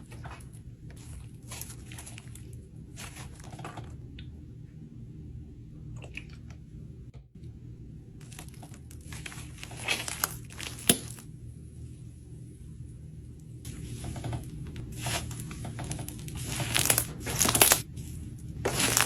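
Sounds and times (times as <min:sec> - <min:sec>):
steady low hum: 0:04.0 - 0:19.0
slime crackling and popping: 0:09.6 - 0:11.2, 0:16.3 - 0:17.9, 0:18.7 - 0:19.0.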